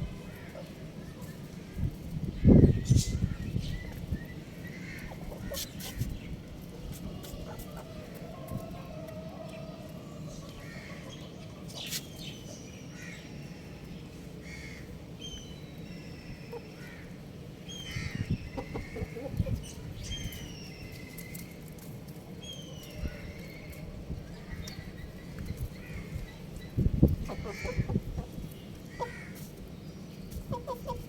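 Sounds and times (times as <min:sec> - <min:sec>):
young rooster chirping: 0:17.9 - 0:21.3, 0:30.3 - 0:31.0.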